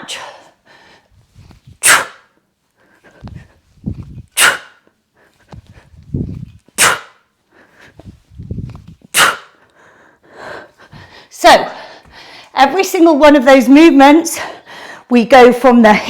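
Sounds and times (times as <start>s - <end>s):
soft low thuds of movement: 1.0s - 1.8s, 3.0s - 4.4s, 5.2s - 6.8s, 7.7s - 9.2s.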